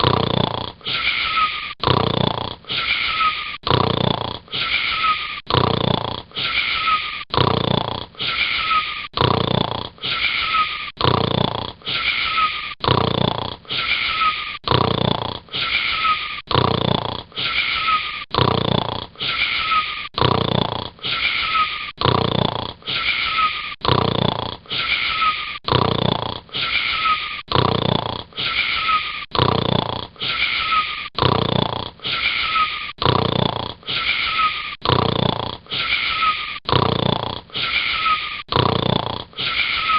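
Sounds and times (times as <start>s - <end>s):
wheezy rasping snoring: 0.0s - 39.9s.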